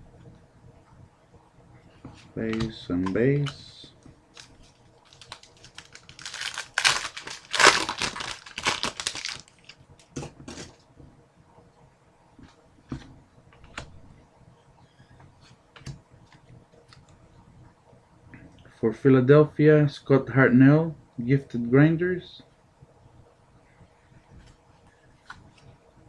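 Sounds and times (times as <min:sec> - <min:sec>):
wrapper crinkling and tearing: 0:04.3 - 0:09.8.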